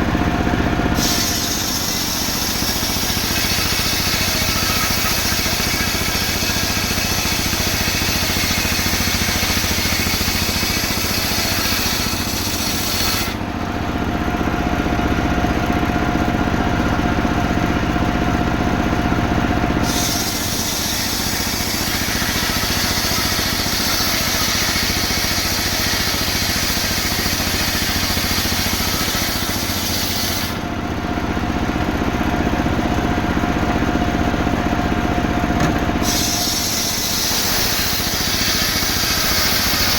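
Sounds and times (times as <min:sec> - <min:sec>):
saw cutting through wood: 0:00.0 - 0:13.6, 0:19.7 - 0:30.8, 0:35.8 - 0:39.9
saw engine running: 0:00.0 - 0:39.9.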